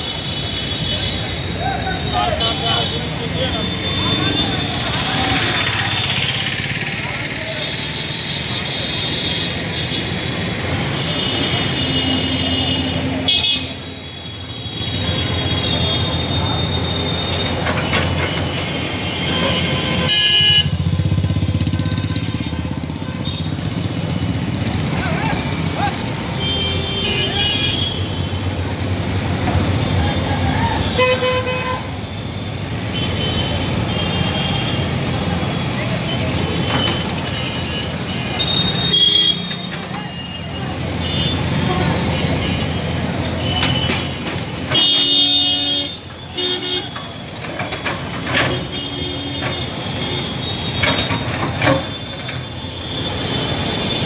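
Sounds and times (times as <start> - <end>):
road traffic rumble: 0.0 - 54.0
vehicle horns honking: 10.8 - 21.0, 26.3 - 28.4, 30.8 - 32.1, 32.9 - 35.0, 36.1 - 47.4, 48.3 - 54.0.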